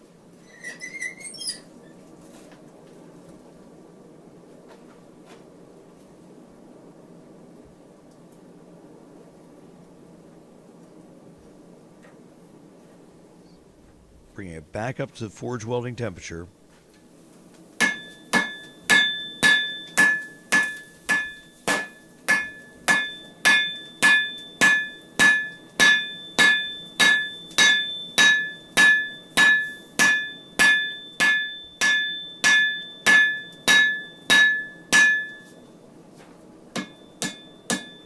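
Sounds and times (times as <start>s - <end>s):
hammer blows on anvil ringing: 17.8s - 35.6s, 36.8s - 38.0s.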